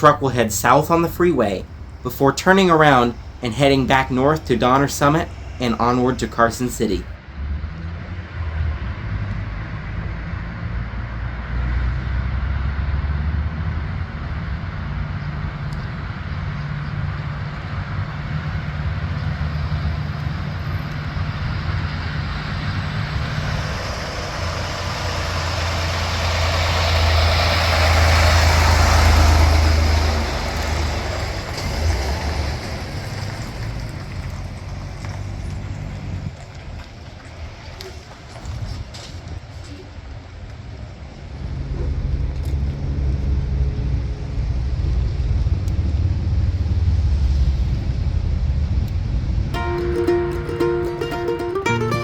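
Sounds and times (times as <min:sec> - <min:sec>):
truck diesel engine passing: 0:00.0 - 0:36.3.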